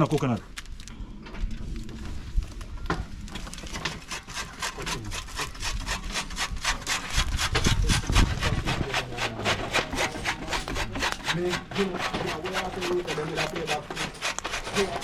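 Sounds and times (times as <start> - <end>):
rapid rhythmic scraping: 3.7 - 15.0.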